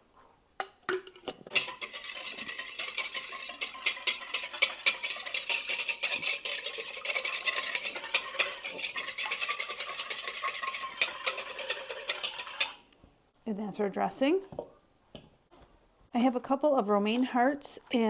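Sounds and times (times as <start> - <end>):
utensil scraping salad bowl: 1.4 - 12.9.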